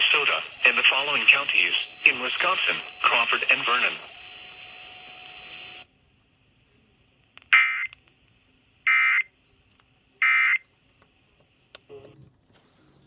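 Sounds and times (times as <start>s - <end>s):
digital data bursts: 0.0s - 5.8s.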